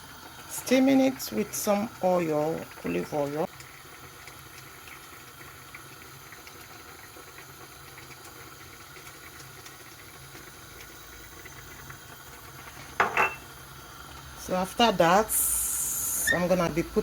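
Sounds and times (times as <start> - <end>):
food sizzling in a pan: 0.0 - 17.0.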